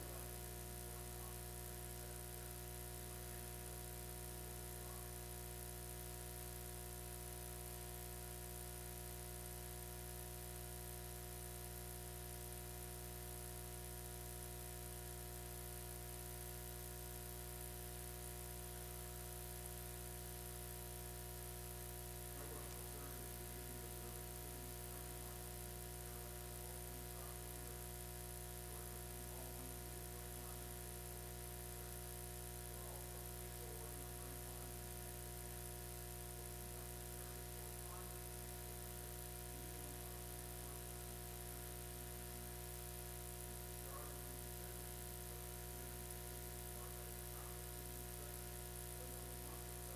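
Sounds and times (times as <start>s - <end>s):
faint indistinct voices: 0.0s - 3.7s, 4.5s - 5.4s, 22.3s - 35.6s, 36.3s - 38.6s, 43.8s - 45.5s, 46.2s - 49.9s
electrical hum and hiss: 0.0s - 49.9s.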